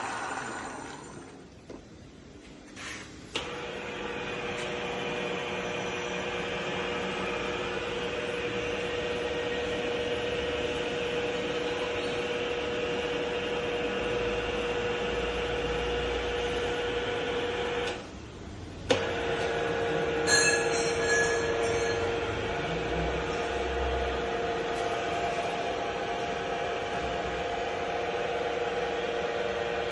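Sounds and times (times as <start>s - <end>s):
drilling machine humming: 0.0s - 1.4s
short high squeal: 20.3s - 22.1s.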